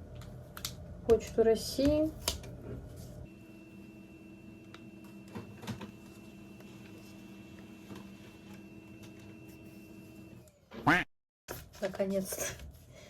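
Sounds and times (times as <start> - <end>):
electrical appliance hum: 0.0 - 13.0.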